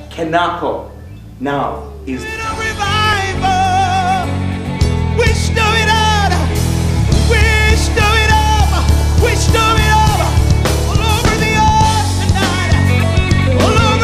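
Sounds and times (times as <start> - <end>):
bass: 0.0 - 14.0
keyboards: 0.0 - 14.0
vocalised melody: 0.9 - 4.4, 8.4 - 14.0
drum kit: 2.6 - 14.0.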